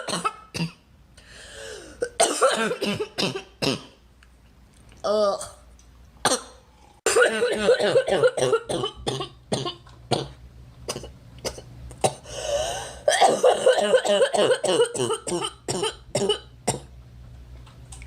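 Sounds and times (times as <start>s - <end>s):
girl coughing: 0.0s - 0.8s, 2.0s - 4.0s, 6.3s - 10.3s, 13.0s - 16.9s
noisy breath in: 1.2s - 2.0s, 12.2s - 13.1s.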